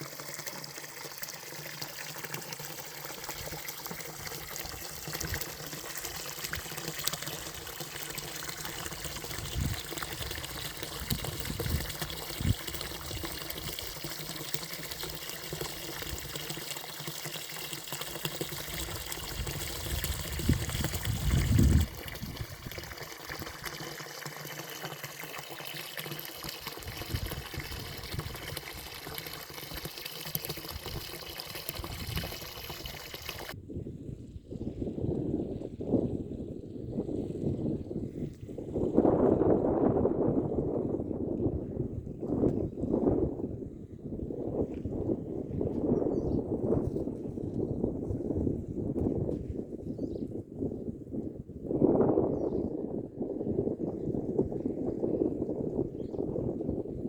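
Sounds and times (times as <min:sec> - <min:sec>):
water trickling: 0:00.0 - 0:33.6.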